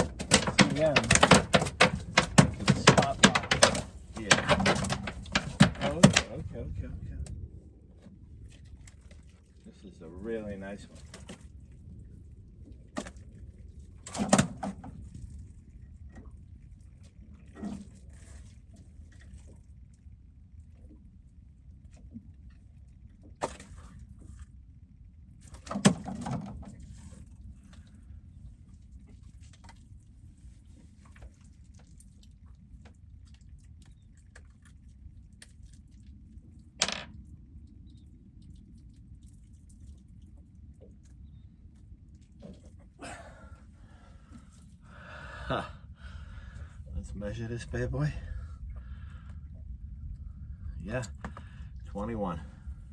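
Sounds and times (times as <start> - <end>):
clicks and taps of gear: 0.0 - 6.3
fish slapping: 0.0 - 6.4
knocks and thumps on a boat: 0.0 - 7.4, 12.9 - 15.3, 25.4 - 27.8
low steady rumble: 0.0 - 14.1, 26.5 - 52.9.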